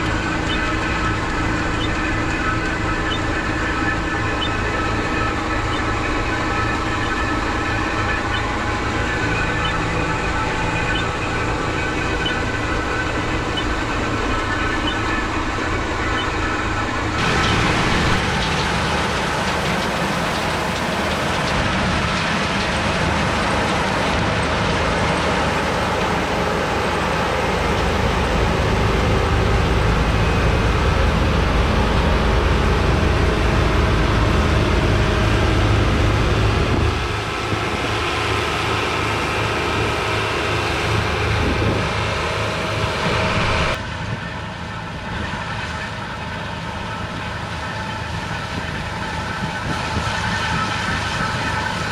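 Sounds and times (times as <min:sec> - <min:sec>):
combine harvester drone: 0:00.0 - 0:51.9.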